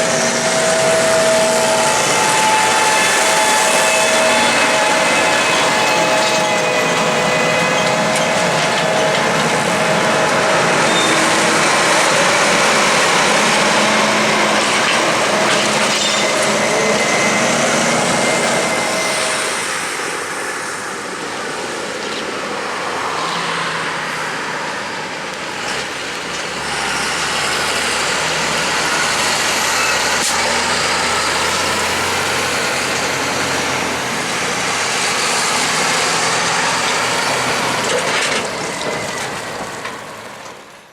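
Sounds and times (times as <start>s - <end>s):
heavy farm machinery running: 0.0s - 22.9s, 23.8s - 40.9s.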